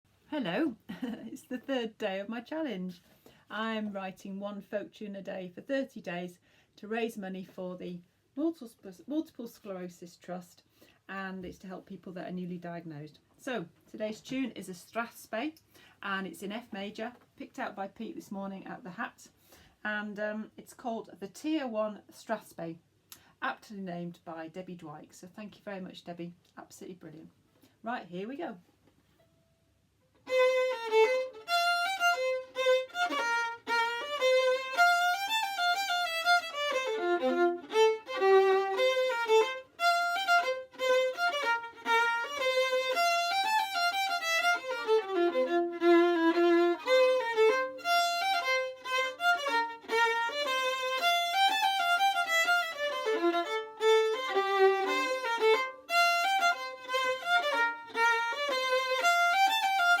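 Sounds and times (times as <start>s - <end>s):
solo fiddle melody: 30.2s - 60.0s.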